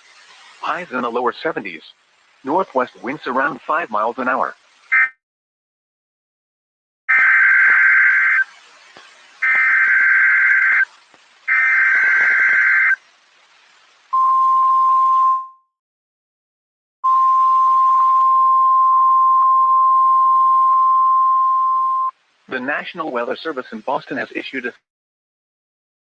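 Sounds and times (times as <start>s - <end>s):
harsh digital data tones: 4.0s - 5.2s, 7.1s - 13.0s.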